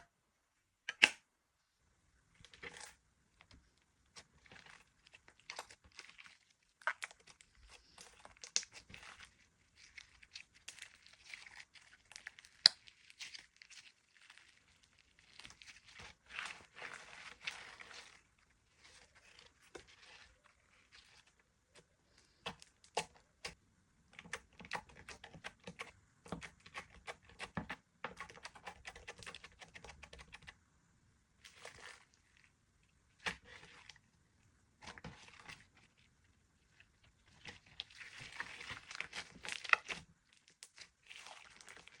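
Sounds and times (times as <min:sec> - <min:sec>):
slime squished by hand: 0:04.1 - 0:23.6.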